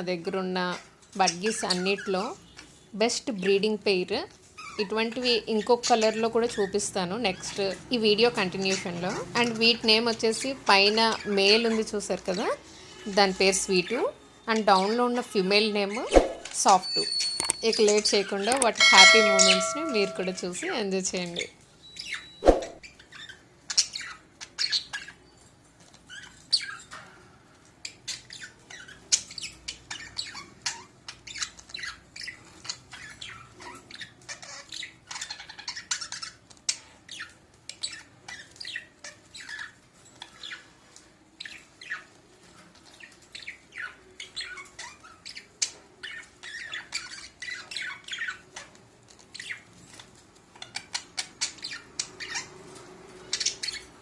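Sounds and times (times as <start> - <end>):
budgerigars chirping and squawking: 10.2 - 11.8, 21.9 - 25.3, 25.9 - 27.0, 27.8 - 40.8, 41.4 - 54.0.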